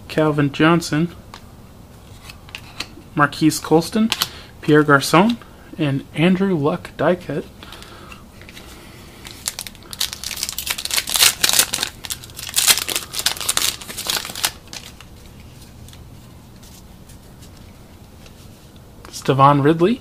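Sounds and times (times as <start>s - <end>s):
foil wrapper tearing and crinkling: 9.2s - 15.1s.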